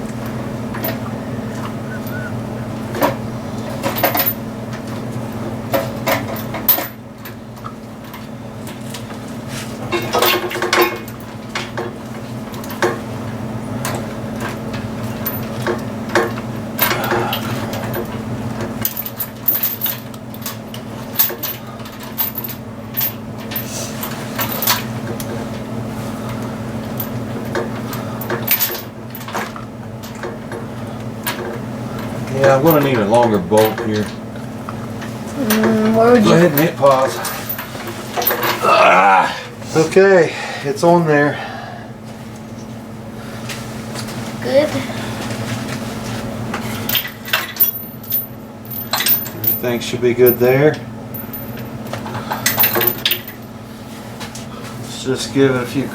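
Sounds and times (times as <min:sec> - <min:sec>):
steady low hum: 0:00.0 - 0:55.9
metal tools clinking and tapping: 0:09.9 - 0:11.9, 0:46.9 - 0:50.4.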